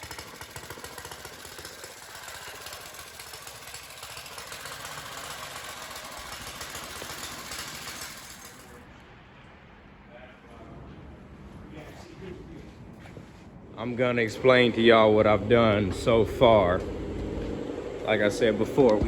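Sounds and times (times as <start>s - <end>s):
go-kart engine running: 0.0s - 8.8s, 14.7s - 19.0s.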